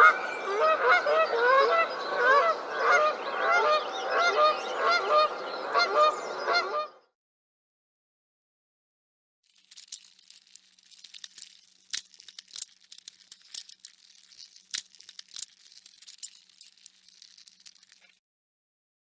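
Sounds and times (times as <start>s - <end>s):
beetle crackling and clicking: 9.5s - 18.2s.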